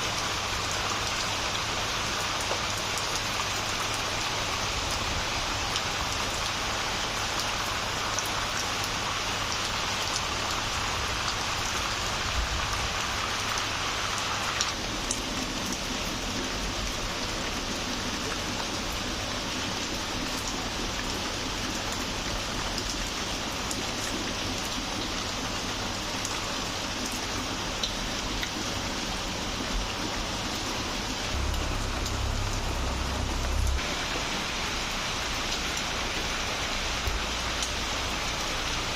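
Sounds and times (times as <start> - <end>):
raindrops ticking on surfaces: 0.0 - 38.9
steady rain: 0.0 - 38.9
low rumble: 31.0 - 35.6.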